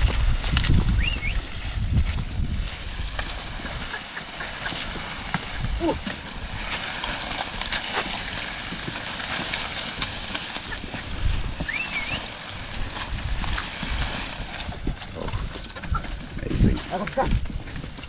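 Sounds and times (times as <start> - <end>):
hoof steps and knocks: 0.0 - 18.0
outdoor ambience: 0.0 - 18.0
short whistle: 1.0 - 1.4, 11.7 - 12.2.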